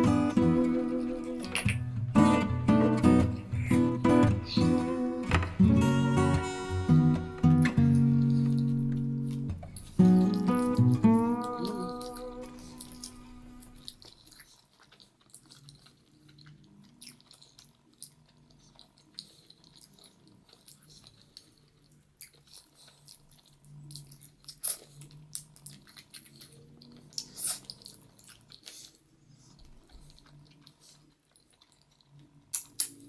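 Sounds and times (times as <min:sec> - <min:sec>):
strummed guitar tune: 0:00.0 - 0:13.9
wet mouth clicks and smacks: 0:01.4 - 0:01.9, 0:29.6 - 0:33.0
chewing and biting food: 0:07.8 - 0:33.0.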